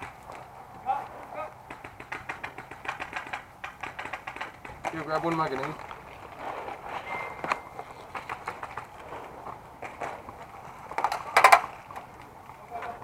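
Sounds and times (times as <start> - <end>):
footsteps: 0.0 - 13.0
sharp clicks: 1.6 - 5.9.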